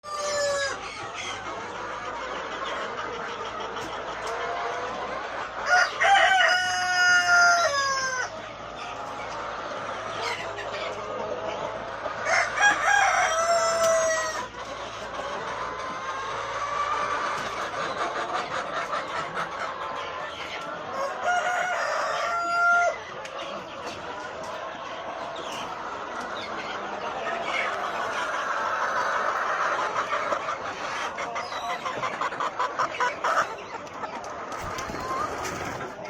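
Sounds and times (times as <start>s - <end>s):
chickens clucking: 0.0s - 36.0s
rooster crowing: 5.7s - 8.3s, 12.2s - 14.4s, 21.0s - 23.0s.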